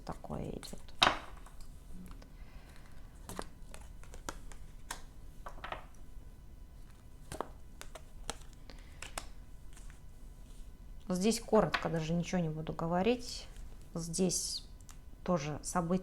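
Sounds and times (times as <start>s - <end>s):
cards clicking and rustling: 0.6s - 5.9s, 6.8s - 10.0s.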